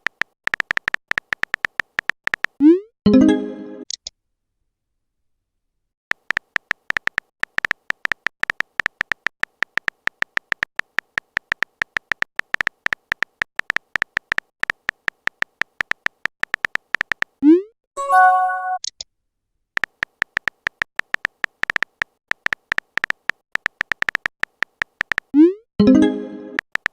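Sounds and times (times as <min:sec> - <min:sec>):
short electronic chime: 0:18.0 - 0:18.8.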